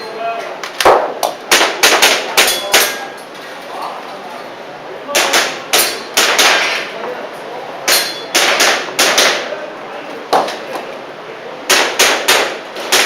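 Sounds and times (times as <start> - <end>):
airsoft pistol shots: 0.8 - 2.5, 11.7 - 13.0.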